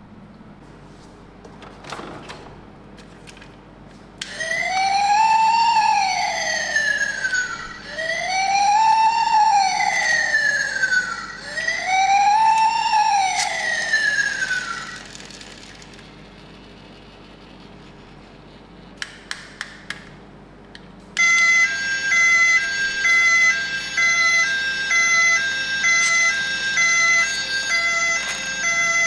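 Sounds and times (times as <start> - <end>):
toy electronic siren wailing: 4.2 - 18.0, 21.2 - 29.0.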